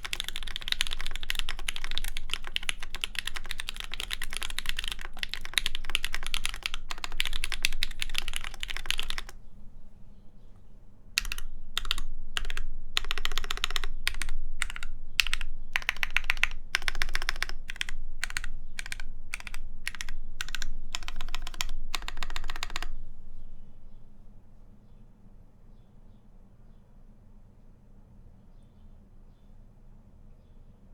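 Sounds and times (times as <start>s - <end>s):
mechanical keyboard typing: 0.0s - 9.4s, 11.2s - 23.0s.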